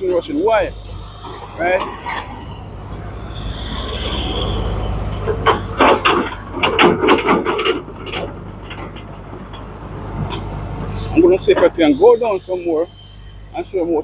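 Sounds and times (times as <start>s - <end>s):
vehicle passing with low rumble: 0.0s - 14.0s
crunching scraping clicks: 5.1s - 11.6s.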